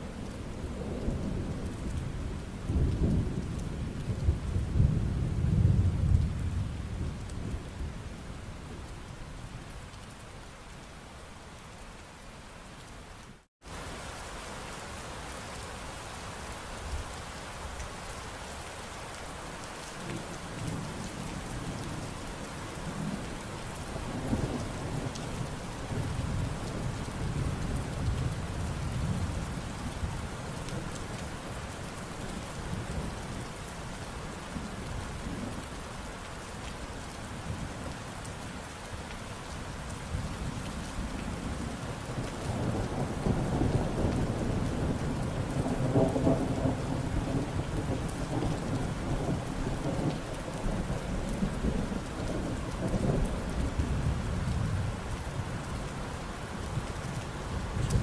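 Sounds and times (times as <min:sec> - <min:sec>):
rain pattering: 0:00.0 - 0:58.0
thunder rumbling: 0:00.8 - 0:07.7, 0:41.4 - 0:55.8.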